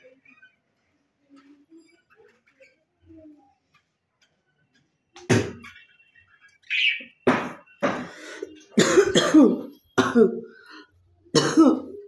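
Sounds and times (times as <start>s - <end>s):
woman coughing: 8.7s - 10.5s, 11.3s - 12.0s.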